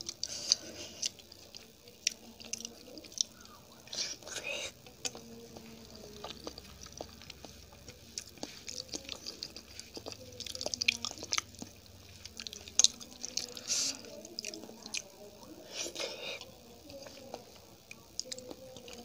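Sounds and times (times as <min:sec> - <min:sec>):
wet chewing and mouth smacks: 0:00.0 - 0:19.0.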